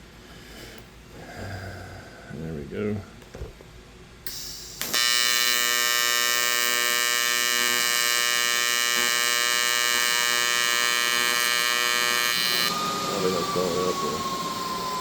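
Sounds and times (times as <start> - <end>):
welding arc buzzing: 4.2 - 15.0.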